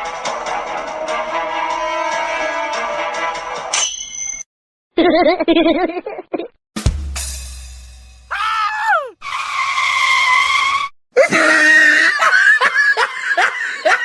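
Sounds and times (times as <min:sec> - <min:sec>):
loud screaming cries: 0:08.3 - 0:09.4.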